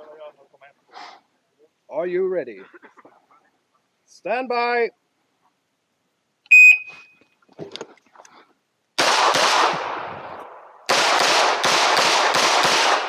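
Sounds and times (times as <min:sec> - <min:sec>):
electronic timer beep: 0:06.5 - 0:07.2
pistol shots: 0:09.0 - 0:13.0.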